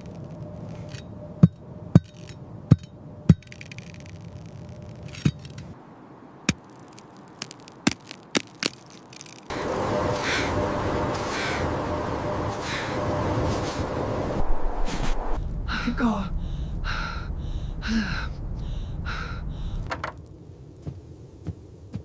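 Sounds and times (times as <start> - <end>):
low background rumble: 0.0 - 22.0
sharp cracks: 2.0 - 5.8, 6.5 - 9.5.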